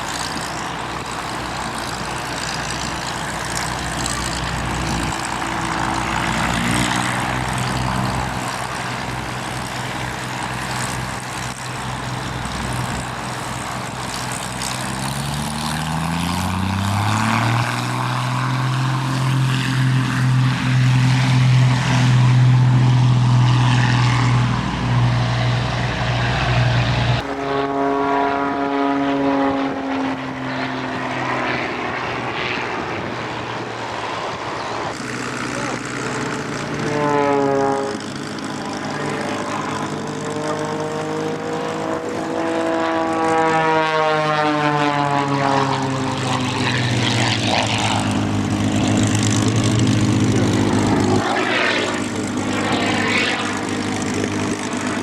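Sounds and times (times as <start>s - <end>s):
propeller aircraft engine: 0.0s - 55.0s.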